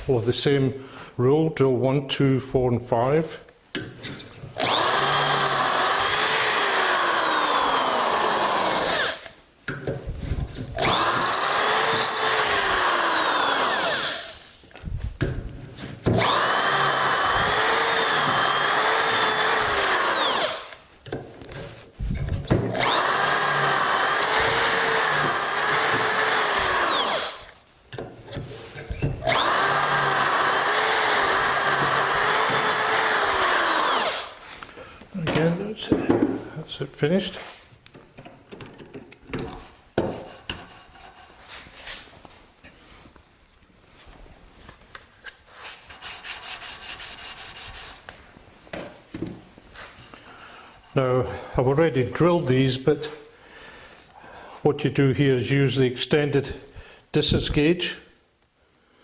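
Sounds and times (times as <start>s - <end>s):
electric drill boring into wood: 4.6s - 9.4s, 10.8s - 14.6s, 16.1s - 20.8s, 22.7s - 27.6s, 29.1s - 34.4s
knocks: 35.2s - 36.4s.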